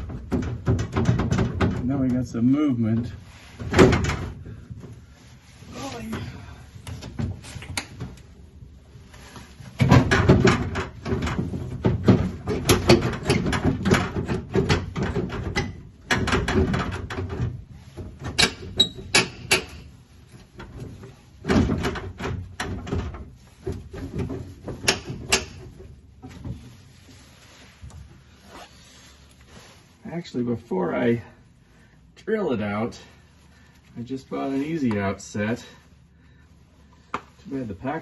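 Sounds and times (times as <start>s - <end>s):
metal clunks and rattles: 0.0s - 27.2s.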